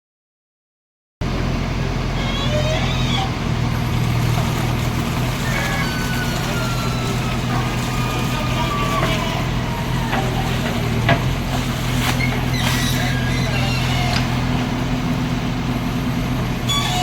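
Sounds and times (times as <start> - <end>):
heavy diesel engine running: 1.2 - 17.0.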